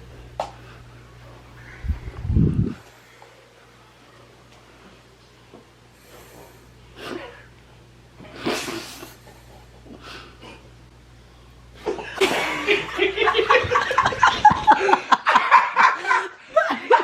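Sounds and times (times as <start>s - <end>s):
steady low hum: 0.0s - 17.0s
people laughing loudly: 11.8s - 17.0s.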